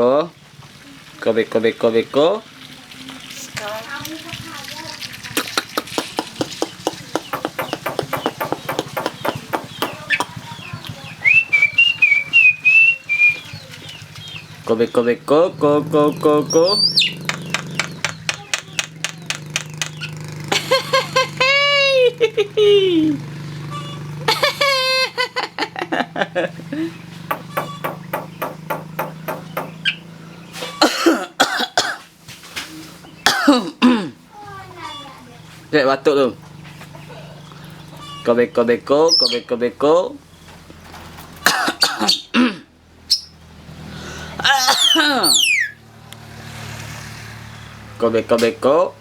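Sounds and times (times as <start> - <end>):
starling clicking: 3.5 - 12.5, 16.8 - 20.2
bird mimicking coughs: 5.4 - 10.7, 30.6 - 32.1, 33.2 - 34.2, 41.4 - 42.7, 44.4 - 45.3
bird wavering whistle: 11.1 - 13.7, 27.3 - 30.0, 43.1 - 43.4, 44.7 - 45.8.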